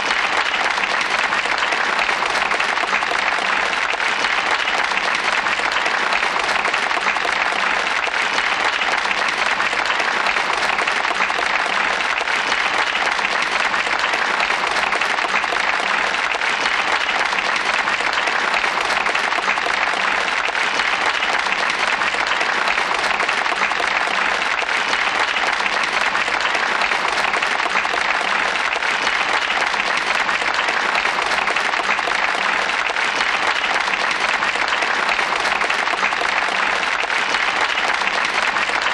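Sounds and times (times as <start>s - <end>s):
crowd applauding: 0.0s - 38.9s.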